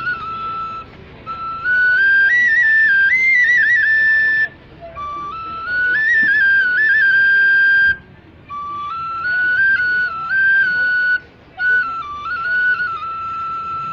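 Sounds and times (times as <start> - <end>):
solo flute melody: 0.0 - 13.9.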